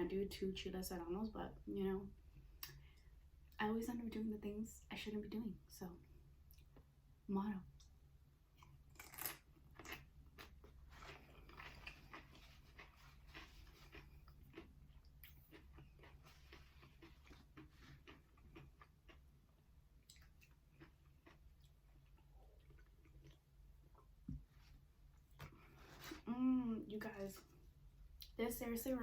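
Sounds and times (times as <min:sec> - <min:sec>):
chewing with crunches: 0:08.5 - 0:24.2.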